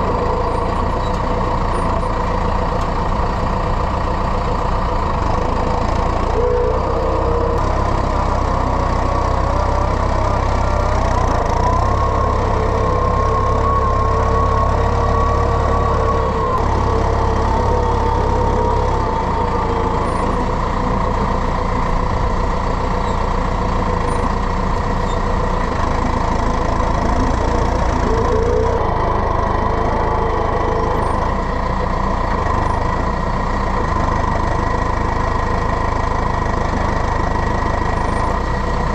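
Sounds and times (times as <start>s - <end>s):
tractor engine running under load: 0.0s - 38.9s.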